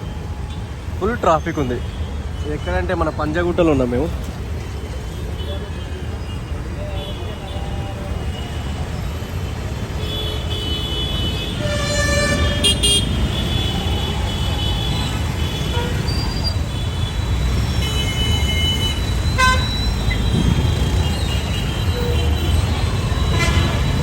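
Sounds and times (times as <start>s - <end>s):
traffic rumble: 0.0s - 24.0s
vehicle horns honking: 10.0s - 24.0s.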